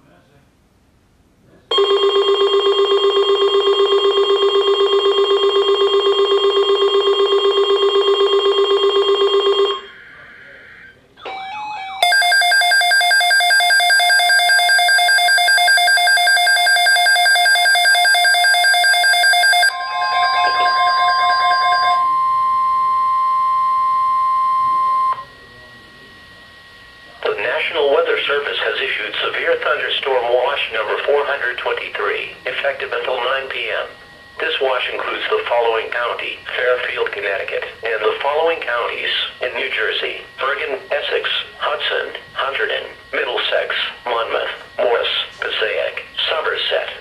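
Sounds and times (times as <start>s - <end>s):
high pulsing alarm: 1.7s - 45.3s
steady single tone: 19.7s - 27.2s.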